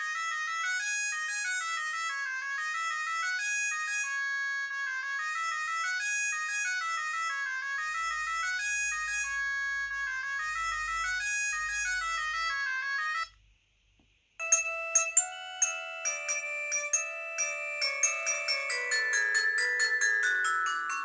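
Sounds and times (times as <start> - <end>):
mobile phone ringtone melody: 14.4 - 21.0.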